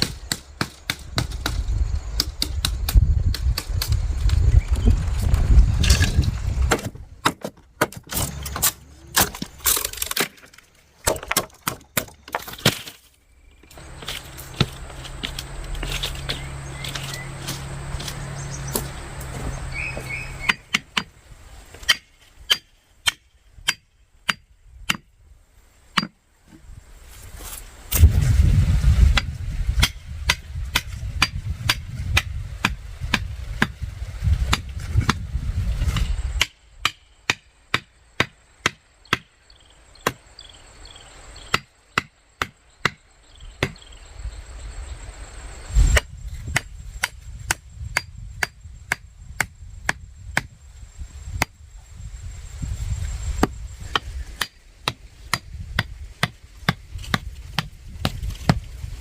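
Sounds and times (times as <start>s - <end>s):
sharp chopping strikes: 43.6s - 43.8s.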